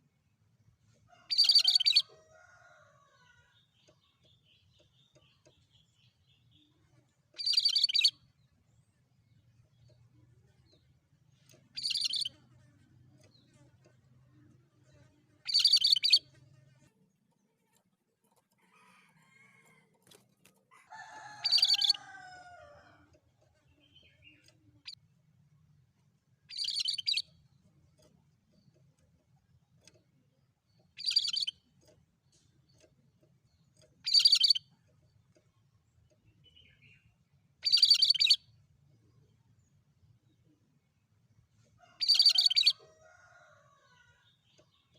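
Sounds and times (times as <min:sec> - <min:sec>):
songbird singing high phrases: 0:01.3 - 0:02.1, 0:07.4 - 0:08.3, 0:11.7 - 0:12.4, 0:15.5 - 0:16.3, 0:26.5 - 0:27.3, 0:30.8 - 0:31.6, 0:34.0 - 0:34.7, 0:36.3 - 0:38.5, 0:42.0 - 0:42.8.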